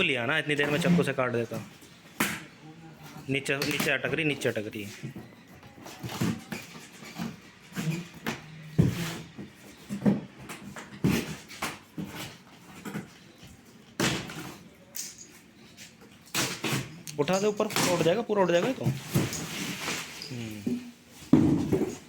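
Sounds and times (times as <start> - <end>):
carton knocking and thumping: 21.2 - 22.0.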